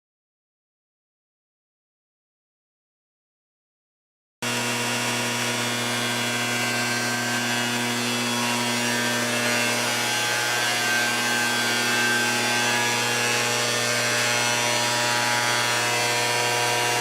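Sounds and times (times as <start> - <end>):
power tool motor humming: 4.4 - 17.0.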